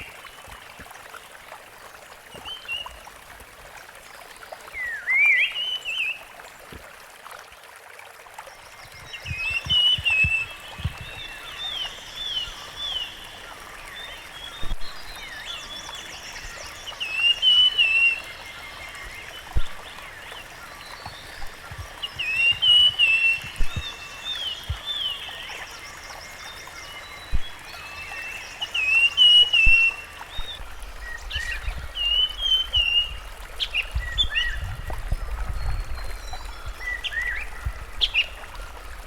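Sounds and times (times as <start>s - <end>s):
birds whistling calls: 27.2s - 38.9s.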